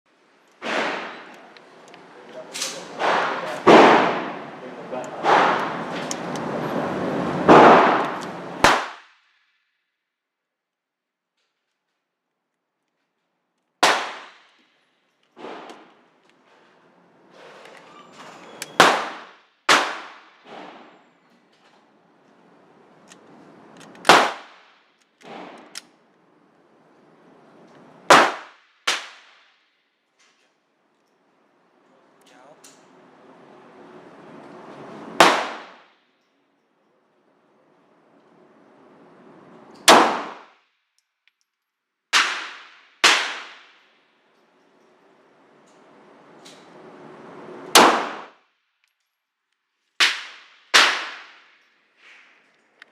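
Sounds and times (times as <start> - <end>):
loud pistol shots echoing: 2.8 - 4.6, 5.2 - 5.9, 7.5 - 9.1, 13.8 - 14.5, 18.8 - 20.8, 24.0 - 24.6, 28.1 - 29.3, 35.2 - 35.8, 39.8 - 40.5, 42.1 - 43.8, 47.7 - 48.3, 50.0 - 51.4
faint gunshot bangs: 3.0 - 4.5, 5.2 - 5.8, 39.9 - 40.5.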